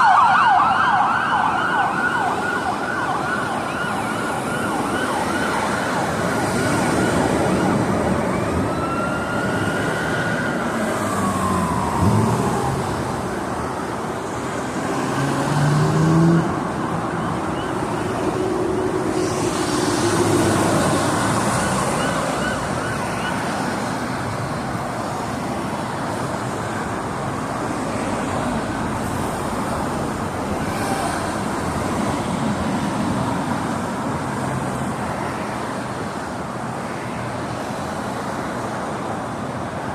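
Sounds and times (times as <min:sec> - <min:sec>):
police siren wailing past: 0:00.0 - 0:24.1
freeway traffic noise: 0:00.0 - 0:39.9.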